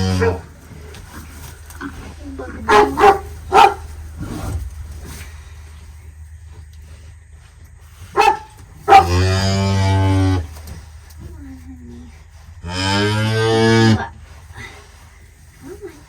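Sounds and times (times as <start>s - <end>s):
cow mooing: 0.0s - 0.5s, 8.9s - 10.5s, 12.6s - 14.2s.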